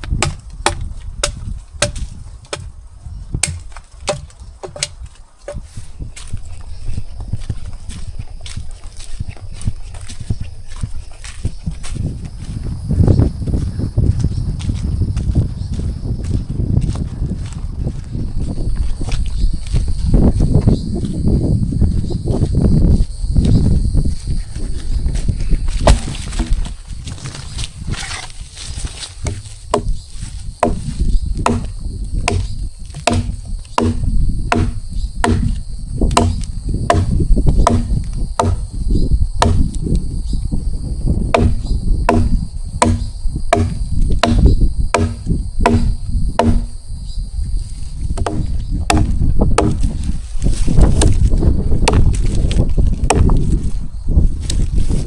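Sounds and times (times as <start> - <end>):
chopping strikes on wood: 0.0 - 2.7, 3.4 - 5.7, 25.8 - 26.7, 29.2 - 30.0, 30.6 - 38.7, 39.4 - 39.8, 41.3 - 46.8, 48.2 - 50.0, 51.8 - 52.2, 53.1 - 53.3
wind on microphone: 0.0 - 55.0.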